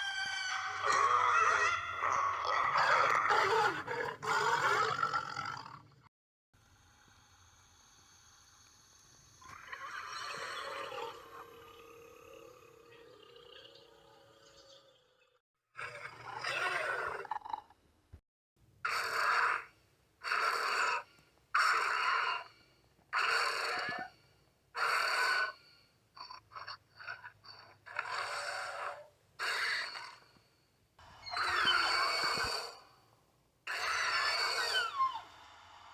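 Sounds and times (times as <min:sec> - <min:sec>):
falling screech: 0:31.2 - 0:32.8, 0:33.7 - 0:35.9
monster chirps: 0:31.2 - 0:32.8, 0:33.7 - 0:35.4
monster hissing calls: 0:33.7 - 0:35.6.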